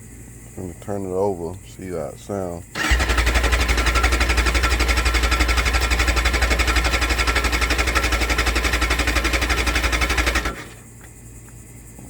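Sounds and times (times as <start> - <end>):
motorcycle engine cranking: 2.8 - 10.8.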